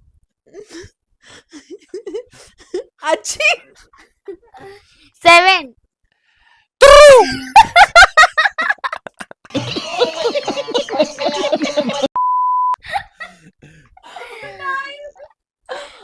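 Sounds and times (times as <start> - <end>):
people laughing: 7.2 - 12.2
electronic beep: 12.2 - 12.8.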